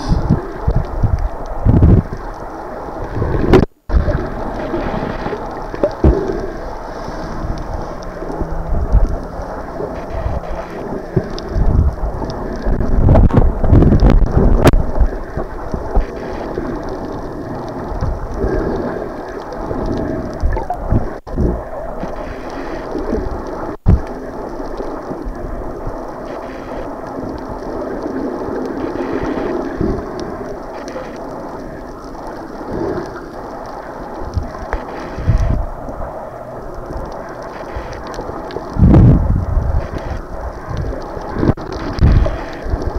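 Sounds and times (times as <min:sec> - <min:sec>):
sea water: 0:00.0 - 0:42.9
wind buffeting microphone: 0:07.2 - 0:16.2, 0:38.7 - 0:42.9.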